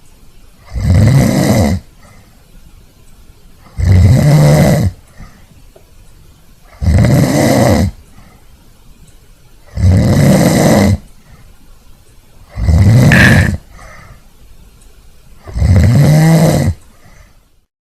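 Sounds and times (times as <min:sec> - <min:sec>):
quiet breaths: 0:00.0 - 0:17.7
person snoring: 0:00.7 - 0:01.8, 0:03.7 - 0:05.0, 0:06.7 - 0:08.0, 0:09.7 - 0:11.0, 0:12.5 - 0:13.6, 0:15.4 - 0:16.8.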